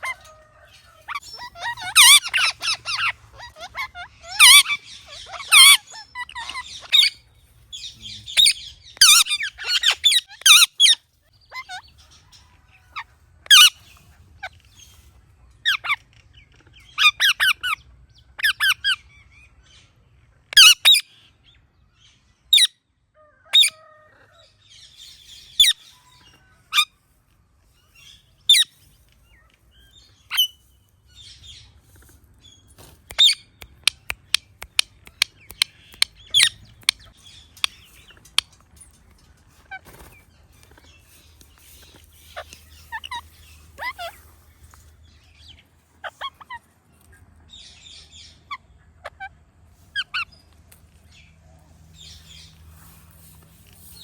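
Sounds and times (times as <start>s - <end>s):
parakeet chirps and squawks: 1.0s - 12.2s, 13.4s - 15.0s, 20.6s - 21.0s, 27.9s - 31.6s, 33.0s - 38.5s, 40.9s - 46.7s, 47.6s - 50.5s.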